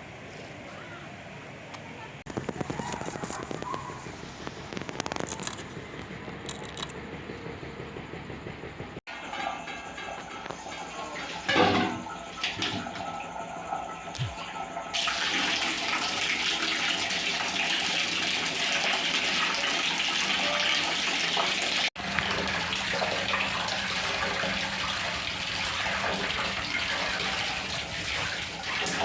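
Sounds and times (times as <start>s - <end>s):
water running in a stream: 10.8s - 29.0s.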